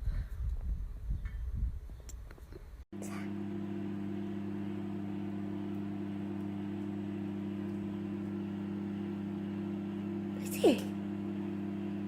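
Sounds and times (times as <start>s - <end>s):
steady low hum: 3.0s - 12.0s.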